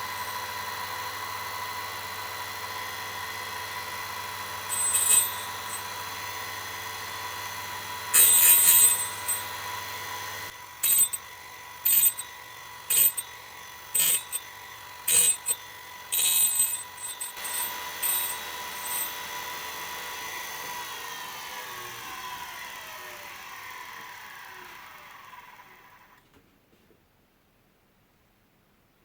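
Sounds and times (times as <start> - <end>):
short harsh grinding bursts: 4.5 - 6.0, 8.1 - 9.5, 10.8 - 11.2, 11.8 - 19.8
spindle motor high whine: 4.7 - 26.0.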